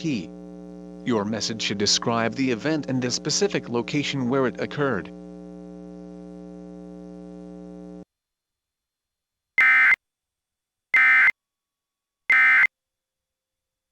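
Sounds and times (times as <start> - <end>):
screechy data bursts: 9.6 - 10.0, 11.0 - 11.3, 12.3 - 12.7.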